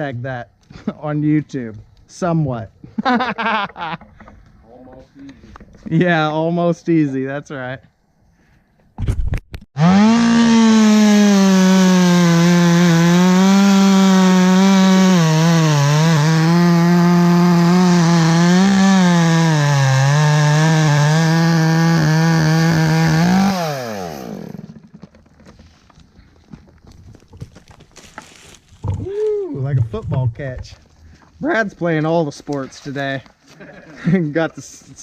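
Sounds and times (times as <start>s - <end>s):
chainsaw cutting wood: 9.8s - 25.3s.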